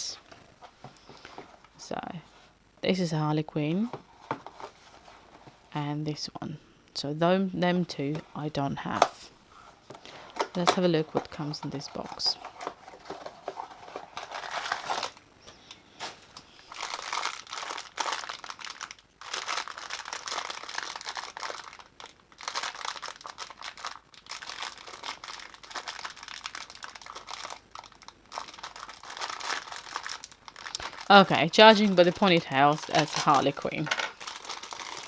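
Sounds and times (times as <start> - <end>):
packaging crinkling: 8.2 - 35.0.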